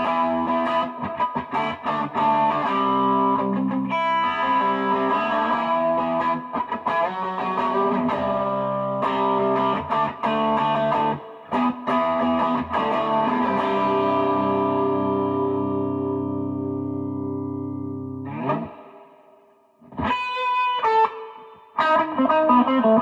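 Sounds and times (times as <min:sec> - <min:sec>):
electric guitar playing: 0:00.0 - 0:23.0.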